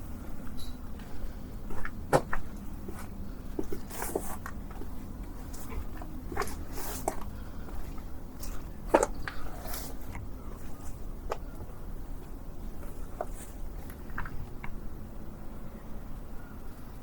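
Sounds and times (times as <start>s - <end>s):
low background rumble: 0.0s - 17.0s
footsteps walking: 0.2s - 13.6s.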